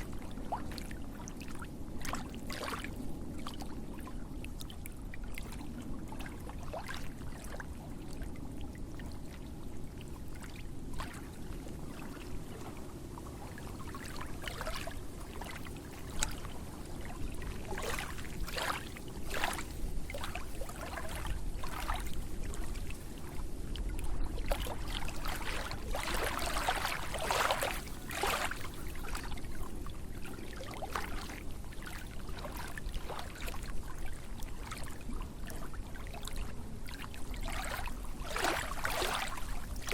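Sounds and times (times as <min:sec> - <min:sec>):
steady water rush: 0:00.0 - 0:09.4, 0:10.2 - 0:39.9
water splashing: 0:14.0 - 0:22.6, 0:24.4 - 0:29.4, 0:36.9 - 0:39.9.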